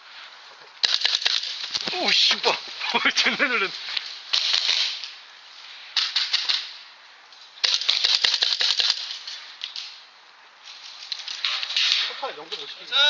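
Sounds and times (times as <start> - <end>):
airsoft gun firing bursts: 0.8 - 1.8, 4.3 - 5.0, 7.6 - 9.3.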